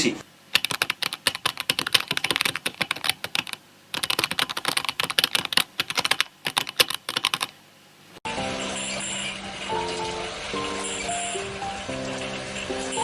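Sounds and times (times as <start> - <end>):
rapid keyboard typing: 0.5 - 7.6.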